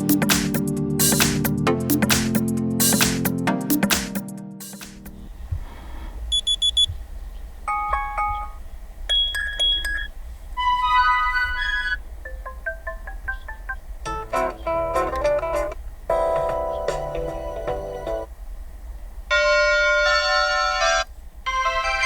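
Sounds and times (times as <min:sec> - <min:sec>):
phone alarm melodies: 0:07.7 - 0:15.1, 0:19.3 - 0:22.0.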